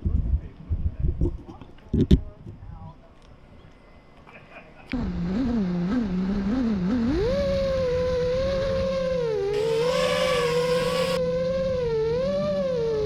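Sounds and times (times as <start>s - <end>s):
quadcopter motors whining: 9.5s - 11.2s.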